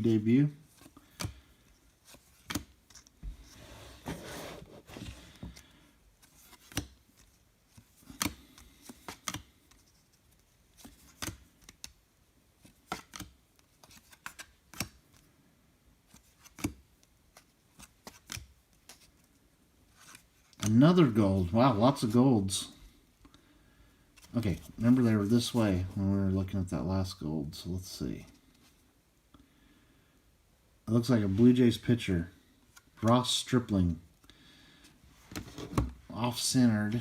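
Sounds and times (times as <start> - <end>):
cards rustling: 0.0 - 12.0, 12.6 - 15.3, 16.0 - 22.9.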